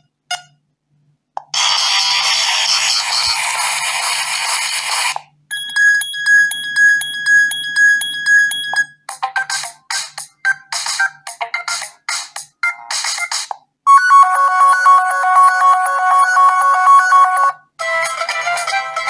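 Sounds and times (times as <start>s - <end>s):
ringtone tune of quick notes: 12.6s - 19.0s.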